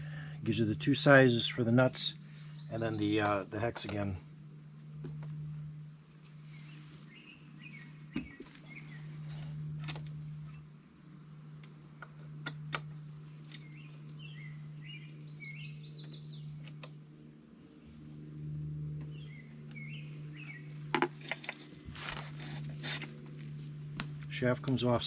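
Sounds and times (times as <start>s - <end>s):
steady low hum: 0.0s - 25.0s
small birds chirping: 1.9s - 4.0s, 5.9s - 9.6s, 13.4s - 16.7s, 19.0s - 20.9s.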